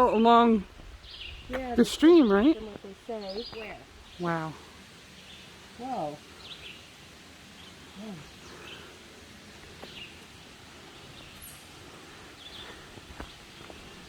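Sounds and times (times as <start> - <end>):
distant waterfall: 0.0 - 14.0
small birds chirping: 0.0 - 14.0
footsteps on a trail: 0.7 - 3.8, 9.4 - 14.0.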